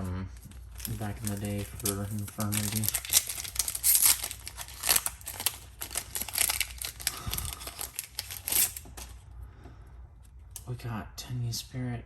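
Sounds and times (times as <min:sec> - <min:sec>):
foil wrapper crinkling and tearing: 0:00.4 - 0:09.2.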